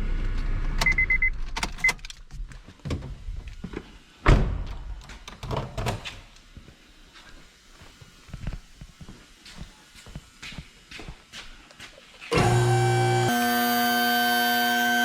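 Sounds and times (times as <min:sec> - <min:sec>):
high beeps: 0:00.8 - 0:01.3.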